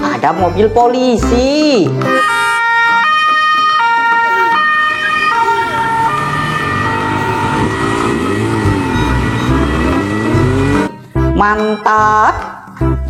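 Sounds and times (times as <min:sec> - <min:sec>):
toy two-tone siren: 0:02.2 - 0:10.4.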